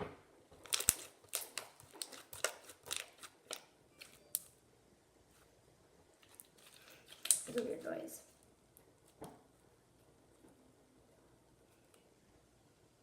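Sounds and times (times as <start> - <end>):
slime crackling and popping: 0.6 - 4.5, 6.2 - 7.8.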